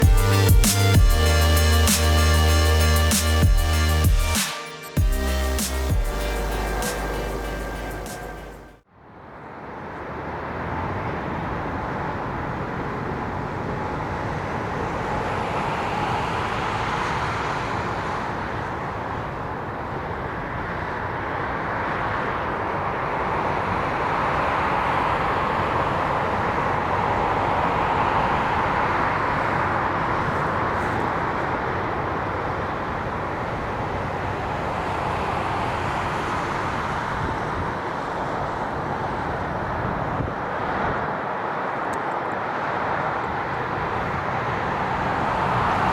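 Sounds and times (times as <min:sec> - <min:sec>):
jet airliner engines roaring: 0:10.3 - 0:45.9.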